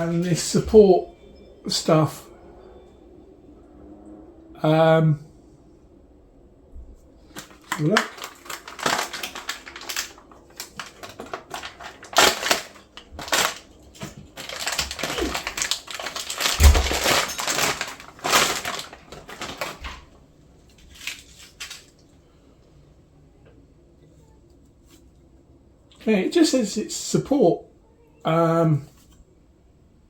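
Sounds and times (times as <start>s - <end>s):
plastic packaging crinkling: 7.3s - 22.1s.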